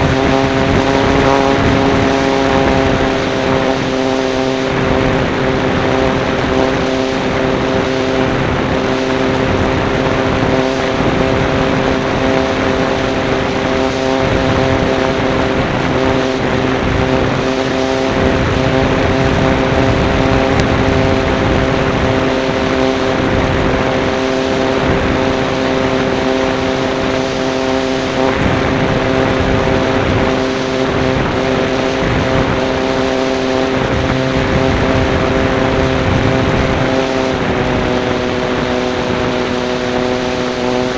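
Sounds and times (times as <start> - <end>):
airflow noise: 0.0 - 40.9
model plane motor and propeller: 0.0 - 40.9.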